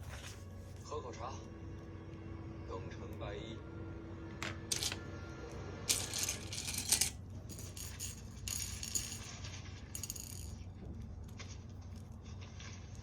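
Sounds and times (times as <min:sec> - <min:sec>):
plastic toy bricks clattering: 0:04.4 - 0:05.0, 0:05.9 - 0:10.7.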